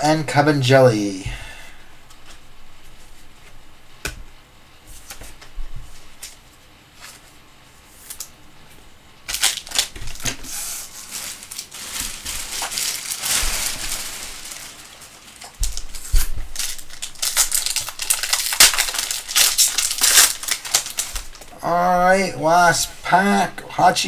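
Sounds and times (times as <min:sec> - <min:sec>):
foil wrapper crinkling: 0:09.3 - 0:21.6.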